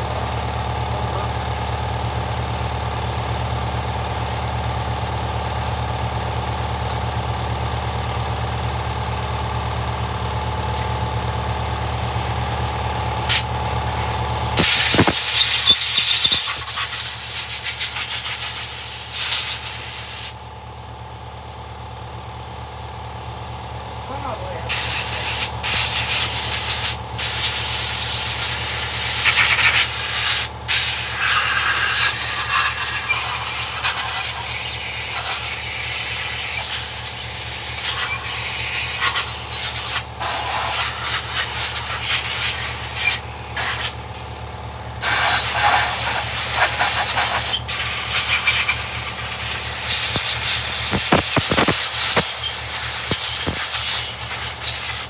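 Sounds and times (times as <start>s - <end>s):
air blow gun hissing: 13.3s - 17.4s, 48.1s - 55.0s.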